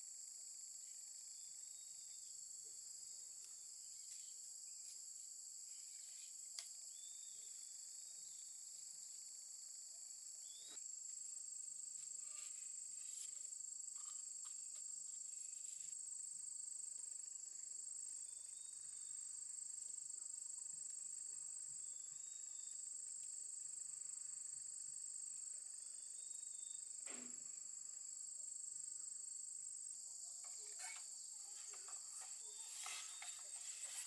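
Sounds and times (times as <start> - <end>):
insects chorus: 0.0 - 10.9, 30.0 - 34.0.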